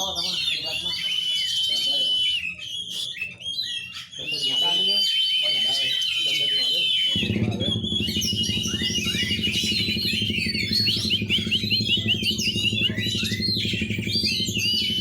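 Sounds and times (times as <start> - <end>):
songbirds chirping: 0.0 - 15.0
fast beat background music: 7.1 - 15.0.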